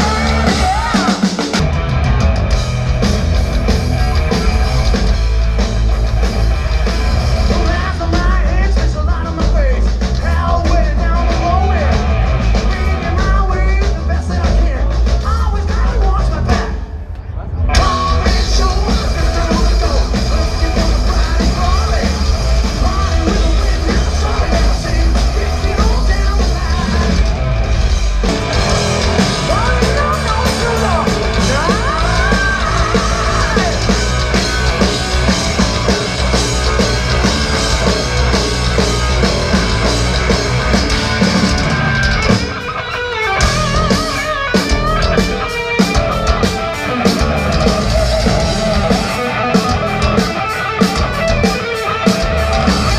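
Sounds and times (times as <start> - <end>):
person singing: 0.0 - 1.6, 29.2 - 36.0
live rock band playing: 0.0 - 52.9.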